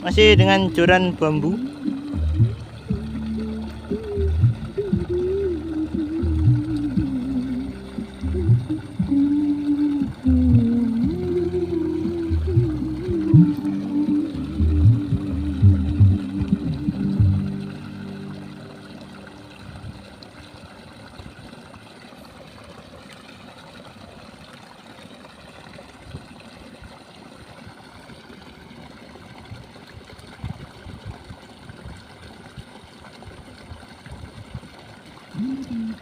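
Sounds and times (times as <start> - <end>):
person speaking: 0.0 - 3.0, 35.4 - 36.0
running water hissing: 0.0 - 20.6.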